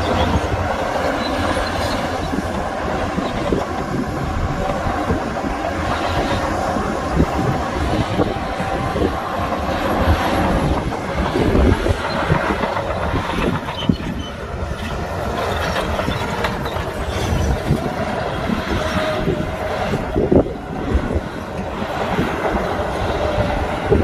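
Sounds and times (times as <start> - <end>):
diesel engines running: 0.0 - 24.0
machinery rattling and clanking: 0.0 - 24.0.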